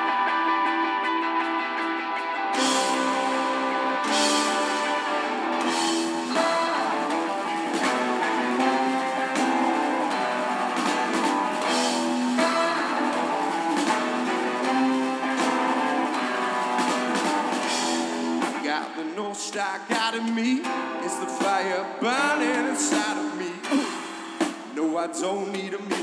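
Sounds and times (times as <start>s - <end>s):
rock band playing: 0.0s - 26.0s.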